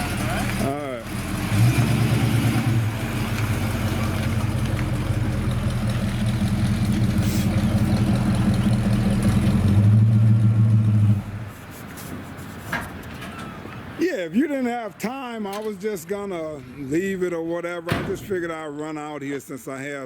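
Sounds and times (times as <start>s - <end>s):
car engine idling: 0.0s - 11.5s.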